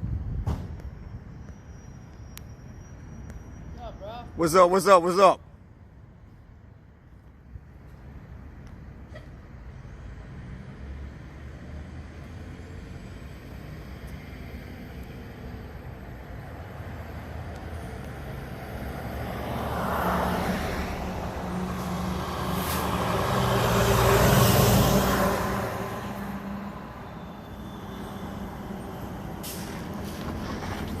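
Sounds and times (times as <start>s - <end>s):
fire truck engine passing: 10.0s - 31.0s
air brake hiss: 29.4s - 30.2s.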